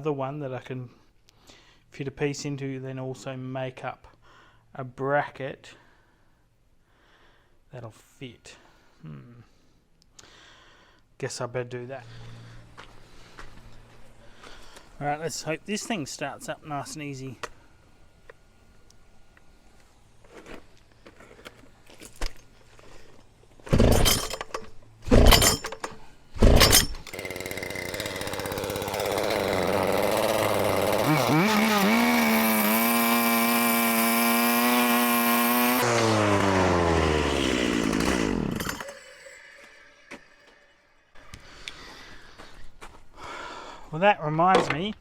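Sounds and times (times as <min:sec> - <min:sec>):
recoil starter pulls: 0:23.6 - 0:41.4
small petrol engine running: 0:26.9 - 0:41.1.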